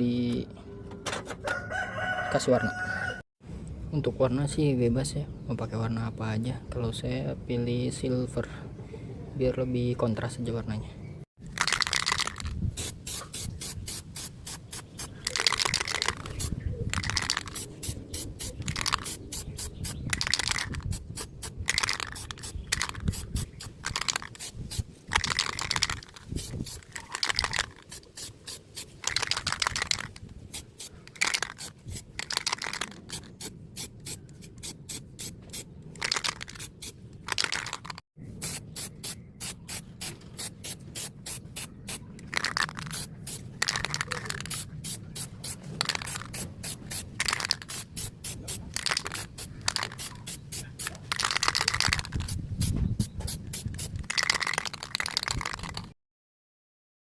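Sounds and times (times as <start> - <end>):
aerosol spray can hissing: 12.2 - 37.0, 38.4 - 54.4.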